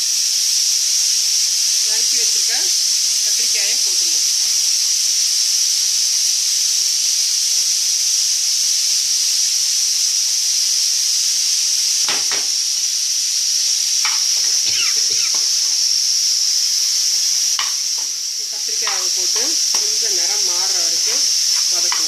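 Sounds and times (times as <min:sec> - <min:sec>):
eggplants sizzling in hot oil: 0:00.0 - 0:22.0
stirring scrapes and knocks: 0:21.0 - 0:22.0.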